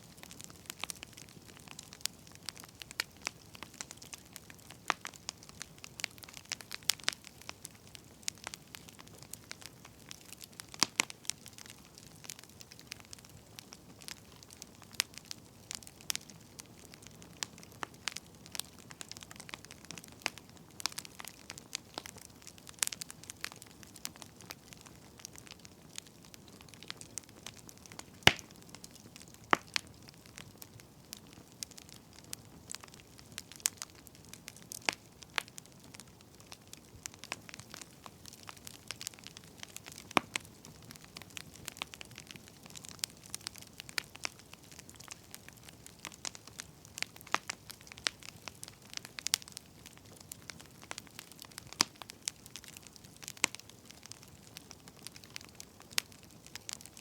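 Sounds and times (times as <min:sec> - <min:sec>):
firewood crackling and popping: 0:00.0 - 0:57.0
soft steady hiss: 0:00.0 - 0:57.0.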